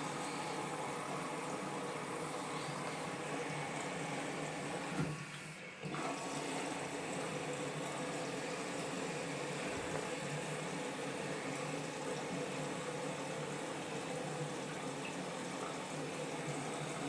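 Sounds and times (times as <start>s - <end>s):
washing machine running: 0.0s - 17.0s.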